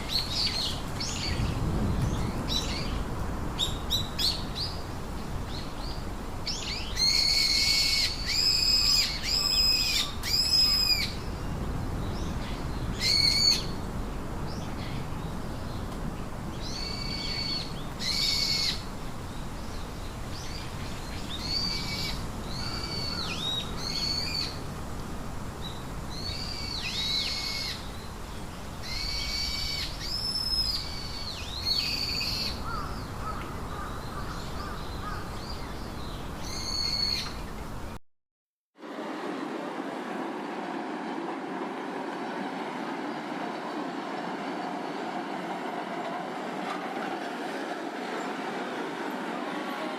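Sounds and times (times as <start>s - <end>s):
bird calling: 28.9s - 35.8s.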